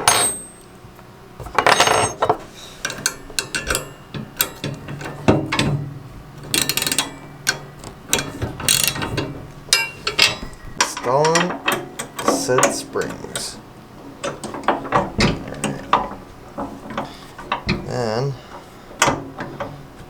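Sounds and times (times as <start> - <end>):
hand ratchet clicking: 6.5 - 9.0.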